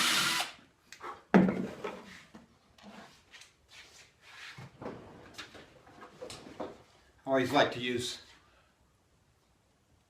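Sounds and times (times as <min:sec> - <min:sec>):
power drill boring into wood: 0:00.0 - 0:00.6
wooden knocks and clatter: 0:01.3 - 0:02.1.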